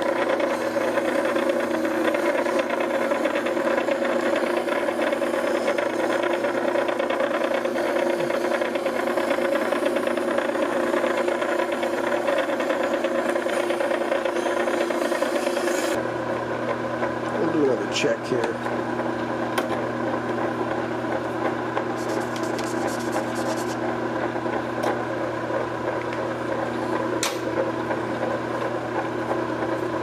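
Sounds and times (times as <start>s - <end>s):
grinder motor hum: 0.0s - 30.0s
blade grinding on whetstone: 13.4s - 16.0s, 22.0s - 23.8s.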